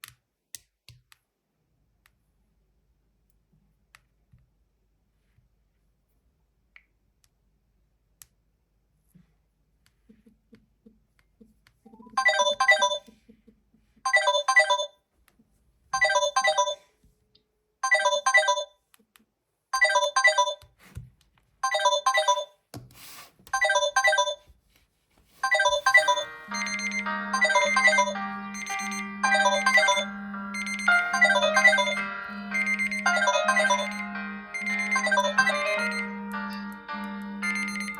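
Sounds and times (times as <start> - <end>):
smartphone ringtone melody: 12.2 - 13.1, 14.1 - 14.9, 16.0 - 16.8, 17.8 - 18.7, 19.8 - 20.6, 21.6 - 22.5, 23.6 - 24.4, 25.4 - 37.9
musical tone with low note: 25.7 - 37.9.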